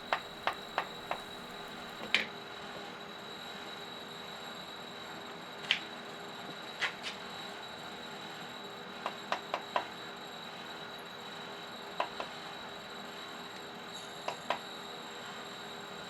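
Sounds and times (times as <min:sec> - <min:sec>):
faint hum with high whine: 0:00.0 - 0:02.3.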